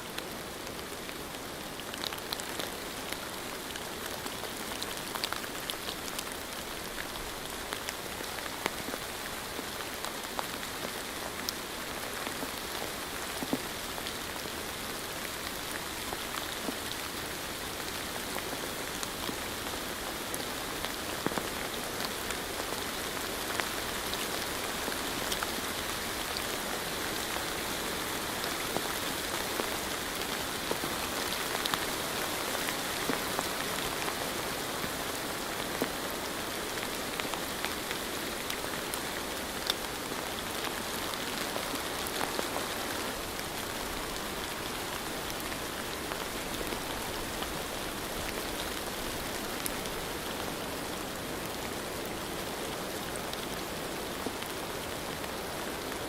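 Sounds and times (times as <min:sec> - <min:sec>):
steady rain falling: 0:00.0 - 0:56.0
raindrops ticking: 0:43.2 - 0:51.0.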